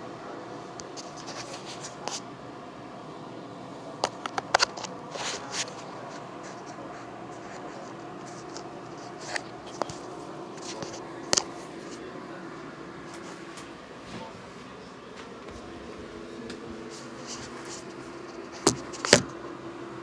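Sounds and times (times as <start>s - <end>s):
steady low hum: 0.0s - 20.0s
clicks taps and rustles of handling: 17.2s - 19.4s.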